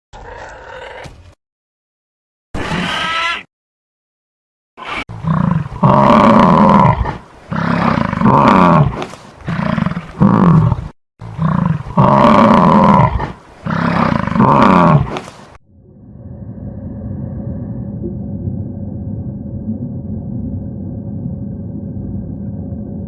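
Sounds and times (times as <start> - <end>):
large animal calling loudly: 2.6 - 3.5.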